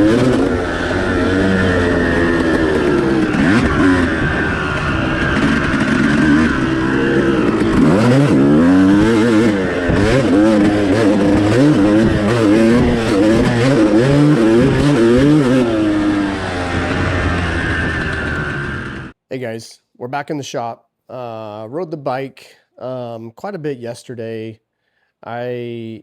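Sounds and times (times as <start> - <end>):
motorcycle engine revving: 0.0 - 19.2.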